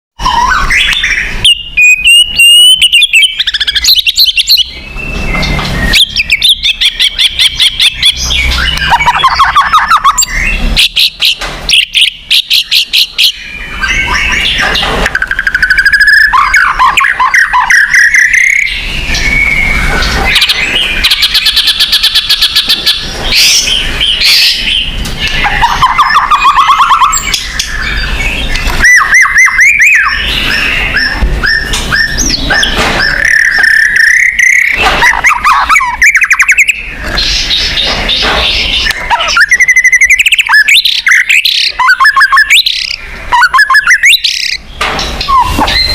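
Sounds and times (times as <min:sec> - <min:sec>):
songbird singing varied song: 0:00.2 - 0:45.9.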